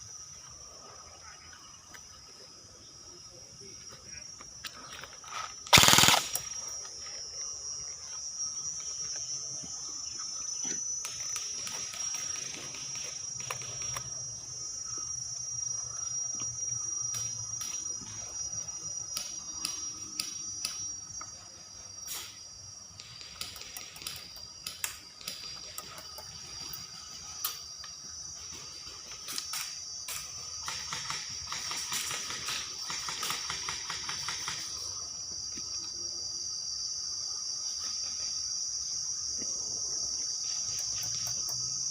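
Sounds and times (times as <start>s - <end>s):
insects trilling: 0.0s - 41.9s
airsoft guns firing: 5.7s - 6.6s.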